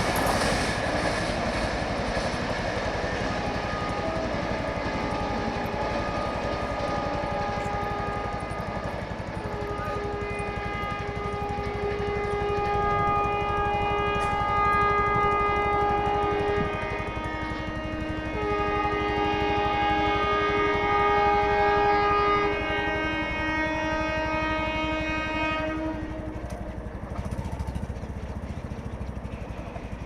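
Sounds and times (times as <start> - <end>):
moving train rumble: 0.0 - 30.0
train twin-tone horn honking: 0.0 - 30.0.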